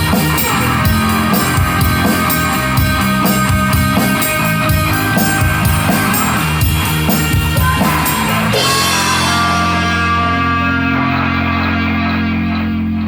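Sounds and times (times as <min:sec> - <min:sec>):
driving drum beat: 0:00.0 - 0:12.0
electric guitar: 0:00.0 - 0:13.0
live rock band: 0:00.0 - 0:13.0.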